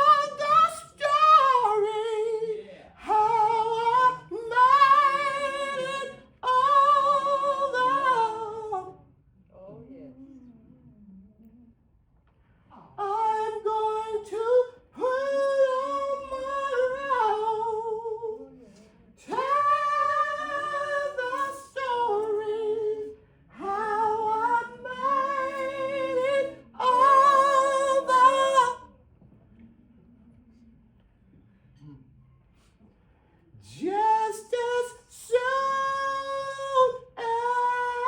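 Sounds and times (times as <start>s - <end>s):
woman singing unaccompanied: 0.0s - 9.0s, 13.0s - 18.6s, 19.2s - 28.9s, 33.6s - 38.0s.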